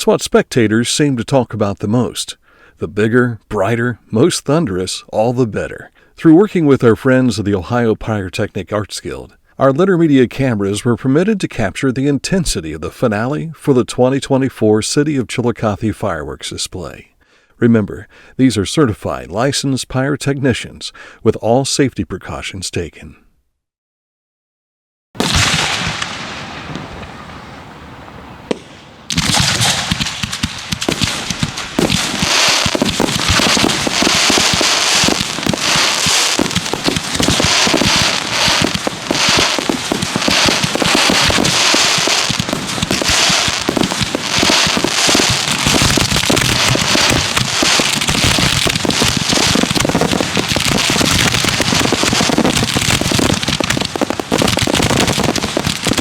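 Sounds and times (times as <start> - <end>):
fireworks firing and bursting: 25.2 - 56.0.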